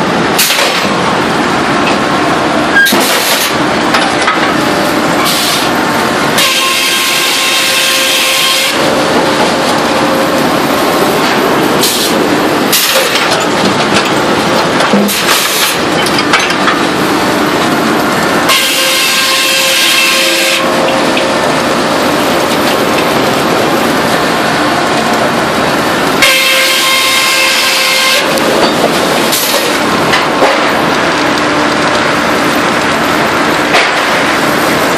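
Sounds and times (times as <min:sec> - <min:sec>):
sawmill saw cutting timber: 0:02.9 - 0:05.8, 0:06.4 - 0:10.5, 0:11.2 - 0:13.3, 0:14.9 - 0:15.8, 0:17.8 - 0:22.5, 0:26.1 - 0:30.7.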